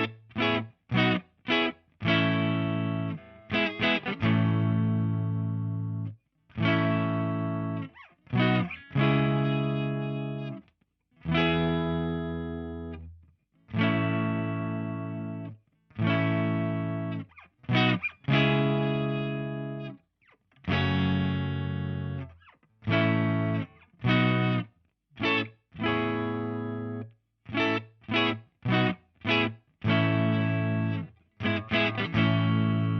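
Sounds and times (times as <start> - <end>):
distorted electric guitar chords: 28.7 - 32.9.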